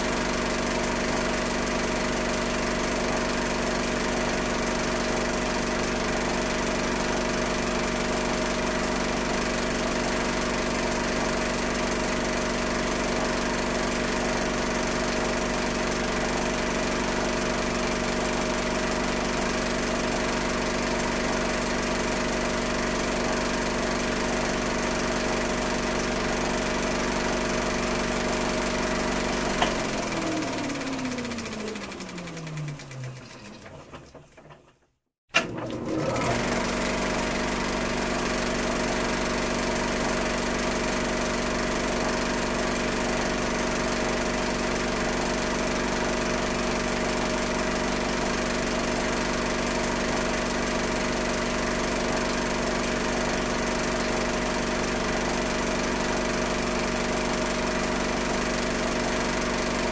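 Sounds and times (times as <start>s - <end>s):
film projector running: 0.0s - 34.5s, 35.4s - 59.9s
motor winding down: 22.8s - 34.0s, 35.4s - 40.2s.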